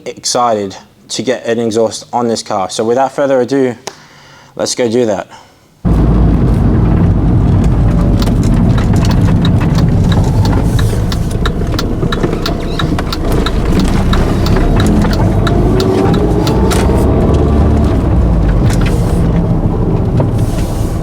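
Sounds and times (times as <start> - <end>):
car engine running: 5.9 - 21.0
sharp ticks: 7.6 - 17.5.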